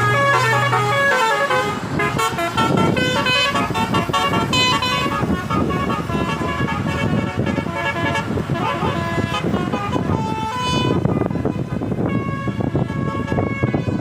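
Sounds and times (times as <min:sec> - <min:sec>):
bus horn playing a tune: 0:00.0 - 0:14.0
vehicle noise: 0:00.0 - 0:14.0.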